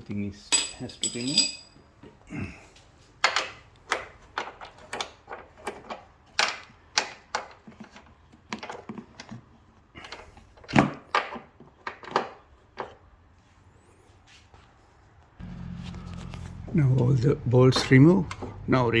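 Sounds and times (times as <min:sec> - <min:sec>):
metallic clicks of tools and bolts: 0:00.5 - 0:01.7.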